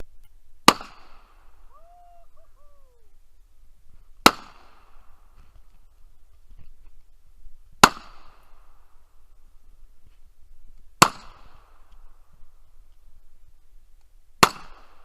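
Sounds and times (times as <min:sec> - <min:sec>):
short rising and falling calls: 0:01.6 - 0:03.3.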